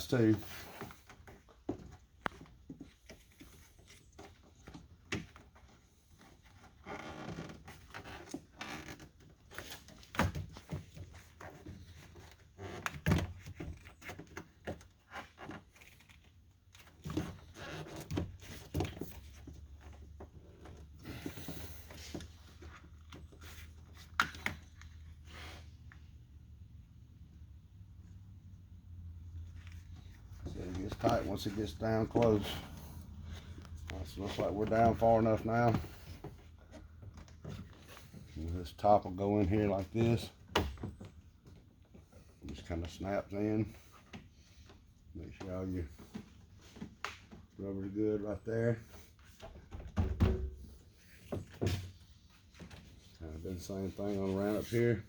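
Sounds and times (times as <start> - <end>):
rubber scraping against frame: 50.6 - 55.0.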